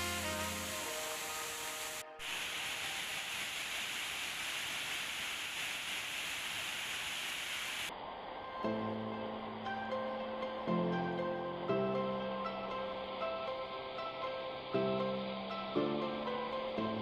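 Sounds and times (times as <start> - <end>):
background music: 0.0 - 2.2, 8.6 - 17.0
waterfall rushing: 0.0 - 17.0.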